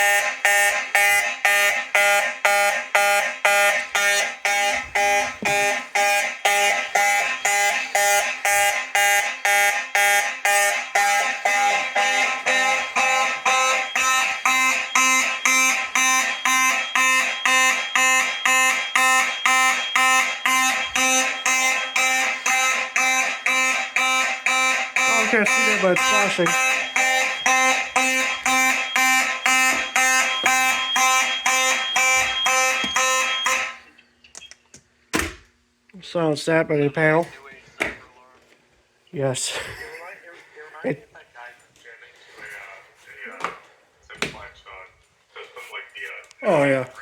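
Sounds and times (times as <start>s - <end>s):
fire alarm horns blasting: 0.0s - 34.0s.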